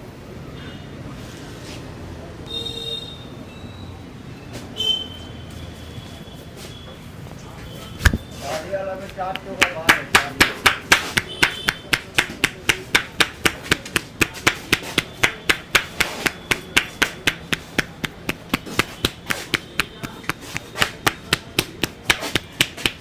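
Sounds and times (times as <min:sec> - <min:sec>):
hands slapping a head: 0:08.0 - 0:23.0.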